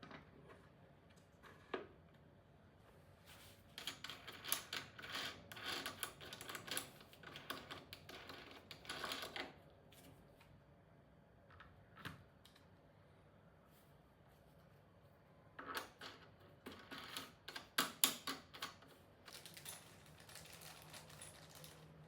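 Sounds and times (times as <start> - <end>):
small clicks and rattles: 15.6 - 22.0.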